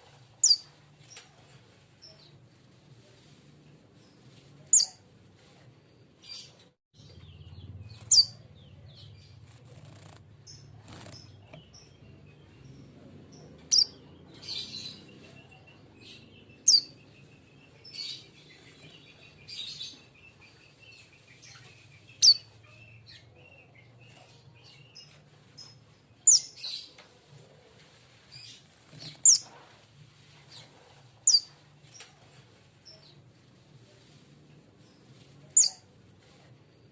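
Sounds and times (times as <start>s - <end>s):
fledgling bird chirping: 0.4s - 1.2s, 4.0s - 27.0s, 28.3s - 29.7s, 30.4s - 32.1s, 34.8s - 36.0s.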